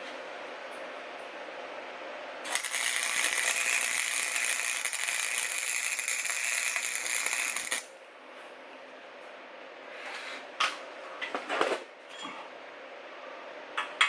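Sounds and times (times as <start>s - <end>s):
welding arc crackling: 2.5s - 7.9s.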